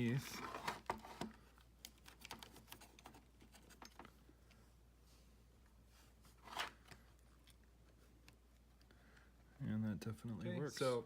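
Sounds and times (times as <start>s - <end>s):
cable rustling: 0.0s - 4.8s.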